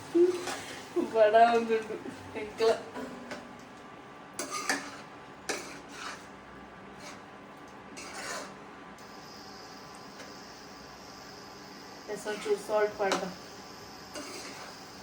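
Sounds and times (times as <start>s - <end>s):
metal utensil scraping a pan: 4.4s - 6.3s, 6.9s - 7.2s, 8.0s - 8.6s, 14.1s - 14.9s.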